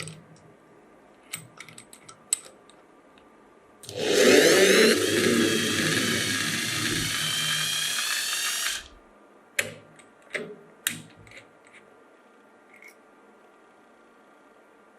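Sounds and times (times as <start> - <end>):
power tool motor whine: 3.9 - 9.0.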